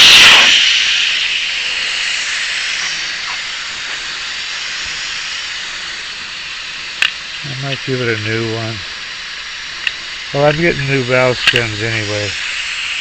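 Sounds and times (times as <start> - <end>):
air hissing out of tire valve: 0.0 - 13.0.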